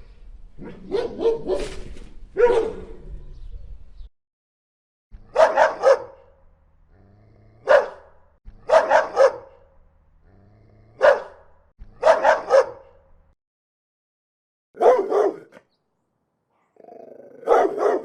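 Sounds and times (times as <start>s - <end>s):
dog barking angrily: 0.6s - 1.8s, 2.4s - 3.0s, 5.2s - 6.4s, 7.6s - 9.7s, 10.9s - 13.0s, 14.8s - 15.6s, 17.3s - 18.0s.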